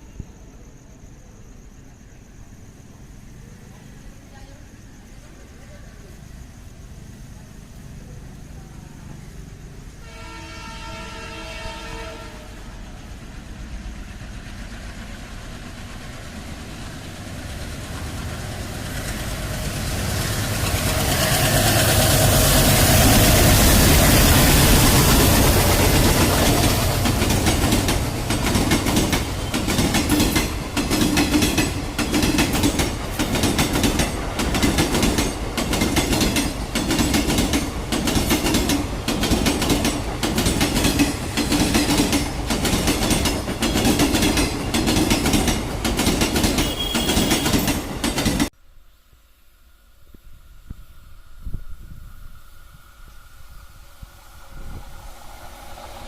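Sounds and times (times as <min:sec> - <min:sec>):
train passing rumble: 0:00.0 - 0:48.6, 0:49.6 - 0:56.0
train horn: 0:10.0 - 0:12.8, 0:46.6 - 0:47.8
train wheels clickety-clack: 0:12.8 - 0:48.5.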